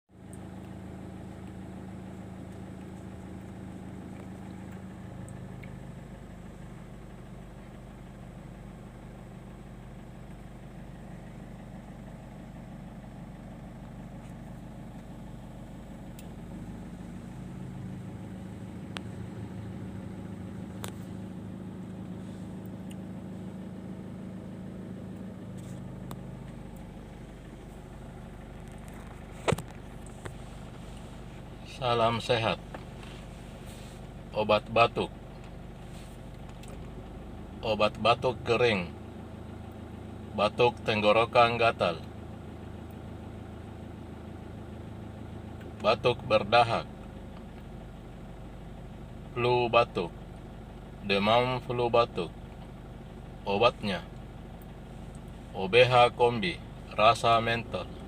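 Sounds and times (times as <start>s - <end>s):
engine hum: 0.1s - 58.0s.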